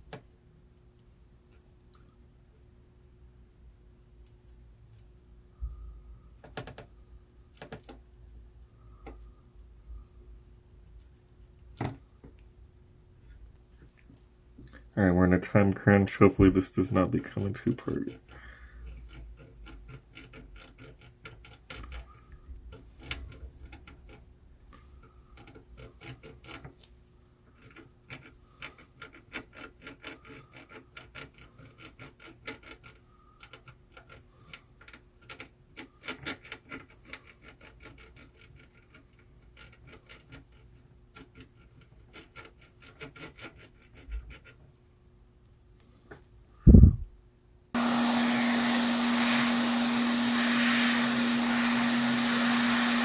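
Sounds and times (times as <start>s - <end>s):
faint steady hum: 0.0s - 53.0s
small dry clicks: 4.0s - 9.7s, 17.4s - 44.6s.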